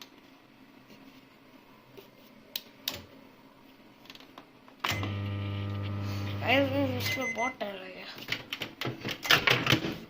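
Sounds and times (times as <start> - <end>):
microwave oven humming: 4.9 - 7.5.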